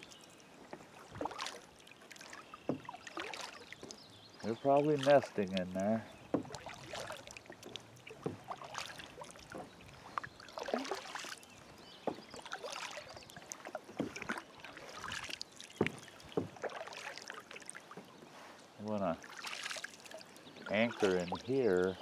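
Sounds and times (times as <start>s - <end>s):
paddle splashing in water: 0.0s - 22.0s
water dripping off paddle: 0.0s - 22.0s.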